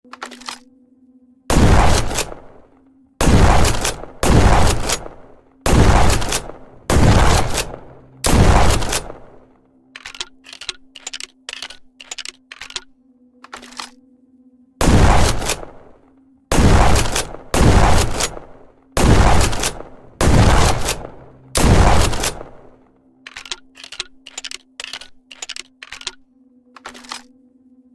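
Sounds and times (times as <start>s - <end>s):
faint steady hum: 0.0s - 27.9s
gun action clicks and clacks: 0.1s - 0.7s, 1.8s - 2.5s, 3.5s - 5.1s, 5.9s - 9.3s, 9.9s - 14.0s, 15.1s - 15.8s, 16.9s - 18.4s, 19.3s - 19.9s, 20.6s - 21.2s, 21.8s - 22.5s, 23.2s - 27.3s
shotgun shots: 1.5s - 9.4s, 14.8s - 15.9s, 16.5s - 22.8s.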